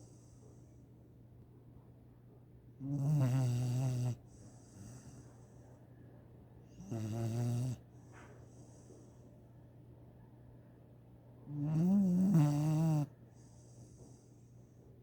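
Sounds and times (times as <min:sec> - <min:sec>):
soft hissing breath: 0:00.0 - 0:00.9, 0:04.2 - 0:05.9, 0:07.9 - 0:09.4, 0:13.3 - 0:15.0
rasping snores: 0:02.8 - 0:05.1, 0:06.8 - 0:07.8, 0:11.5 - 0:13.1.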